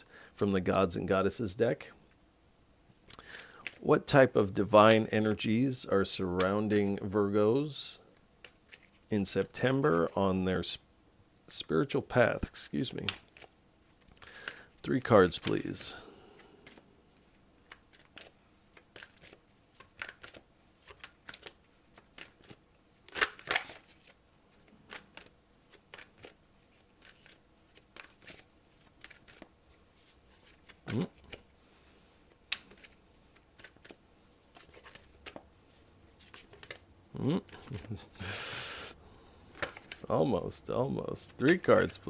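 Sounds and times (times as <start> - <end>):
cards being shuffled: 6.4 - 7.0, 15.2 - 31.6, 32.2 - 42.0.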